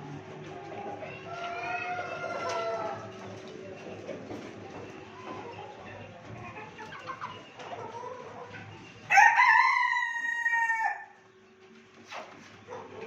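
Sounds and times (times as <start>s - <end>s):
chickens clucking softly: 0.0s - 9.1s, 9.9s - 13.0s
rooster crowing: 9.1s - 11.2s.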